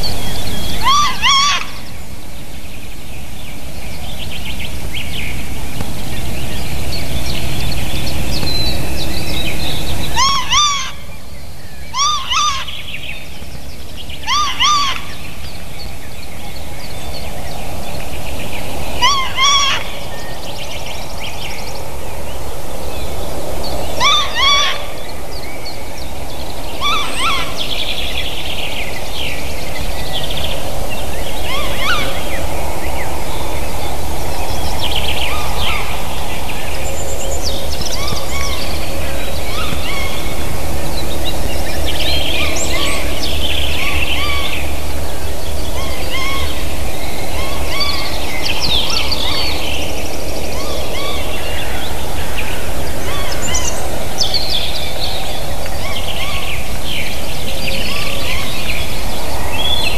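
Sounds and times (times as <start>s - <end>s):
steady low rumble: 0.0s - 59.9s
wild birds chirping and calling: 0.0s - 59.9s.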